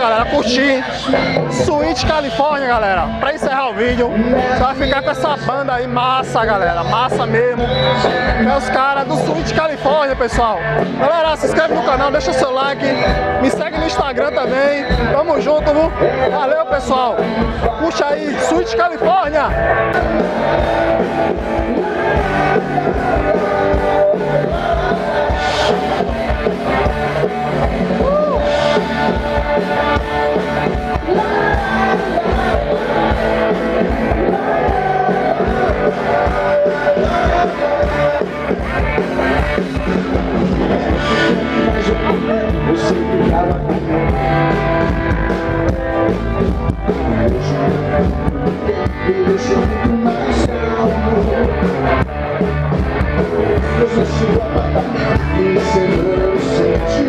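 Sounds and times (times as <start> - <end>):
guitar: 0.0 - 57.0
rock band playing: 0.0 - 57.0
person singing: 19.9 - 45.0, 46.5 - 52.1, 53.2 - 57.0.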